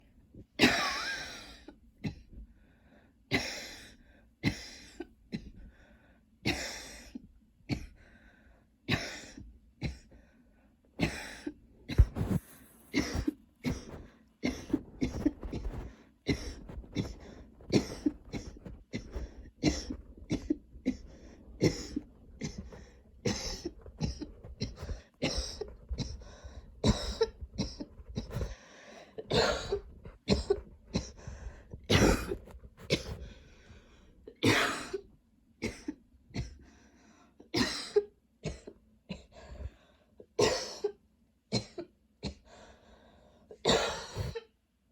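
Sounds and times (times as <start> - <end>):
woman coughing: 0.6 - 1.4, 8.9 - 10.1, 11.0 - 26.2, 26.8 - 28.5, 29.3 - 31.2, 31.9 - 33.2, 34.4 - 36.6, 37.6 - 39.3, 40.4 - 42.4, 43.6 - 44.5.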